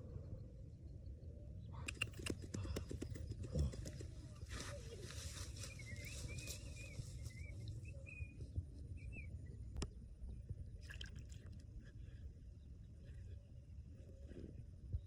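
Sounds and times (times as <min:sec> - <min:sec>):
sharp click: 0:01.9 - 0:02.4.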